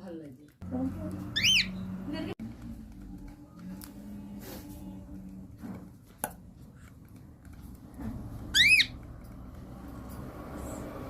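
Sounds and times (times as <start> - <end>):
cockatiel chirp: 1.3 - 1.8, 8.5 - 9.0.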